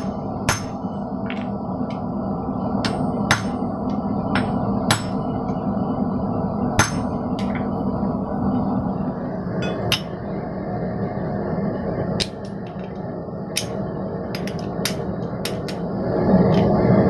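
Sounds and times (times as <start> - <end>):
hammer striking steel on anvil: 0.0 - 0.8, 2.8 - 3.6, 4.3 - 5.2, 6.8 - 7.6, 9.6 - 10.2
steady background hum: 0.0 - 17.0.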